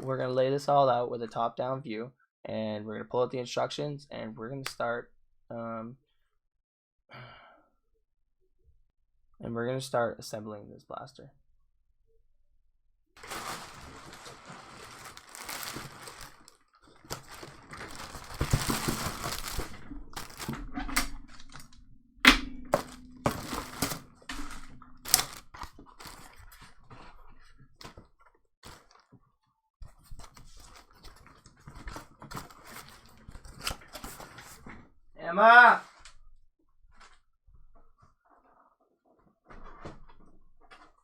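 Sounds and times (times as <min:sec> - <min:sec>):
plastic bags rustling: 0:13.2 - 0:27.2, 0:28.6 - 0:29.0.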